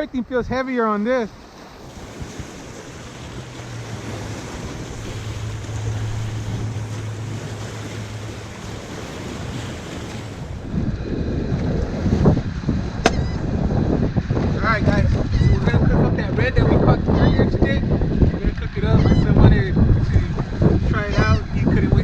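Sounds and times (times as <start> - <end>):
surf on shore: 0.0 - 22.0
wind buffeting microphone: 1.3 - 22.0
steady low hum: 3.4 - 9.0.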